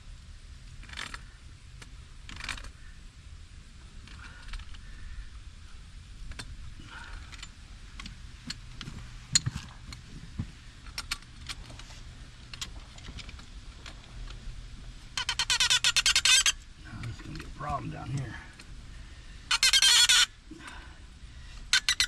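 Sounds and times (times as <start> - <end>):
low steady hum: 0.0 - 22.0
loud fast rattle: 2.2 - 2.8.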